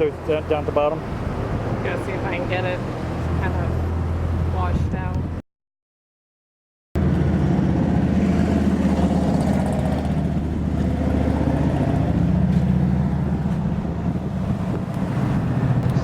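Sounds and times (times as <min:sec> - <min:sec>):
steady low rumble: 0:07.0 - 0:16.0.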